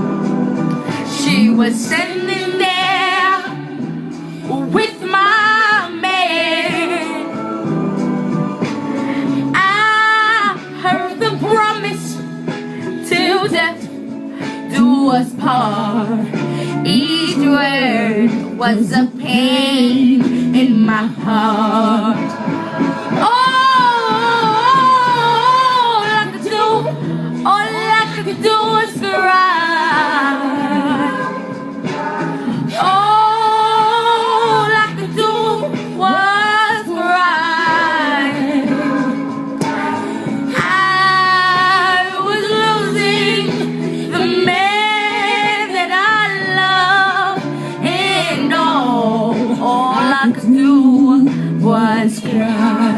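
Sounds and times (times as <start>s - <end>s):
woman singing a slow ballad: 0.0s - 52.9s
sustained backing chords: 19.8s - 49.6s.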